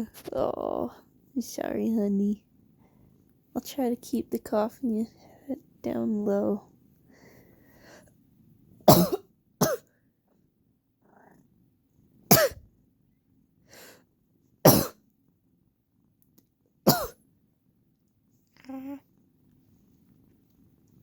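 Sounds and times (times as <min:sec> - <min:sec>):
person coughing: 0:08.9 - 0:09.9, 0:12.3 - 0:12.6, 0:14.7 - 0:15.0, 0:16.9 - 0:17.2.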